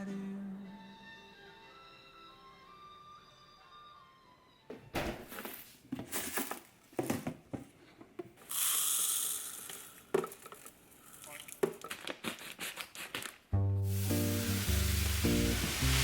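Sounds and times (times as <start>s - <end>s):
steady hiss: 8.4s - 10.1s, 13.9s - 16.0s.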